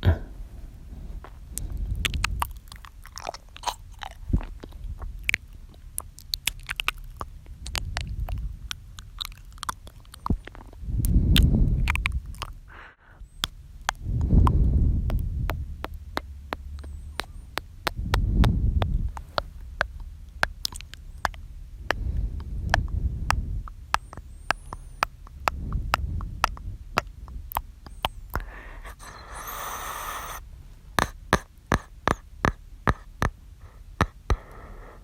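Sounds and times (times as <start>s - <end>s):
breaths blowing on microphone: 0.0s - 2.4s, 18.0s - 19.4s, 21.8s - 23.7s, 28.4s - 30.4s
wet mouth clicks and lip smacks: 1.5s - 12.6s, 18.8s - 30.4s.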